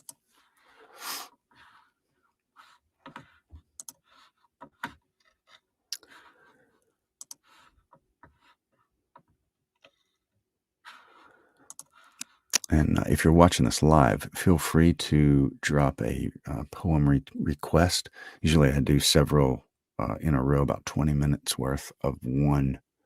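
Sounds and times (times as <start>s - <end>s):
computer mouse clicks: 0.0s - 0.2s, 3.0s - 4.0s, 7.2s - 7.7s, 11.6s - 12.7s
soft breaths: 0.2s - 4.7s, 5.9s - 8.6s, 9.9s - 12.5s.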